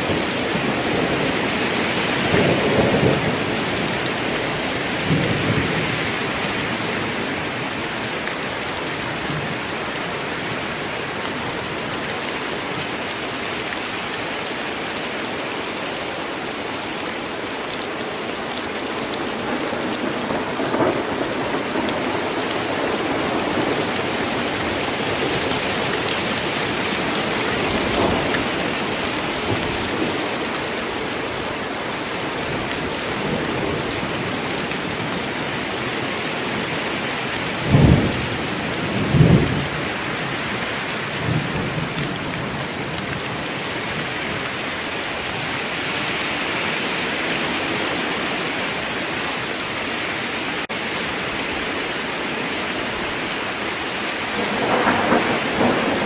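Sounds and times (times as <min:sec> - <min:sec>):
dense rainfall: 0:00.0 - 0:56.0
low rolls of thunder: 0:54.3 - 0:56.0.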